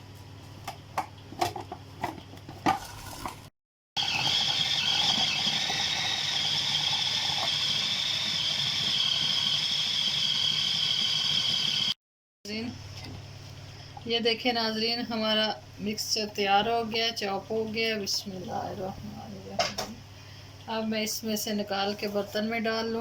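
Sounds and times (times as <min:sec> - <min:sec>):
food chopper motor whining: 0:04.0 - 0:12.0.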